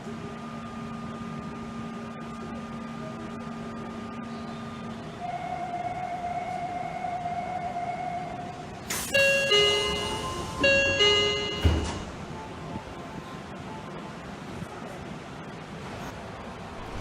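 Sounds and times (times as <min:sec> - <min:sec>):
subway train electrical hum: 0:00.0 - 0:17.0
train rumble: 0:04.8 - 0:17.0.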